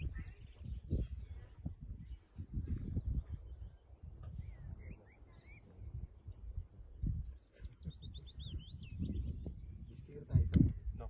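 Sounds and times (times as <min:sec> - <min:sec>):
songbird singing: 0:00.0 - 0:11.0.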